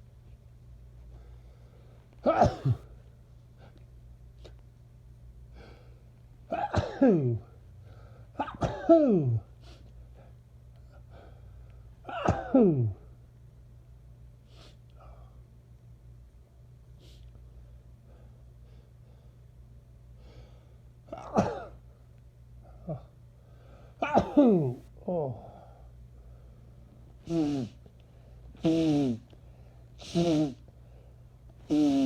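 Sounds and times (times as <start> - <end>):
person sneezing: 2.2 - 2.9, 8.4 - 9.8, 21.1 - 21.8, 24.0 - 25.4, 27.2 - 27.8, 28.6 - 29.3, 30.0 - 30.6, 31.6 - 32.0.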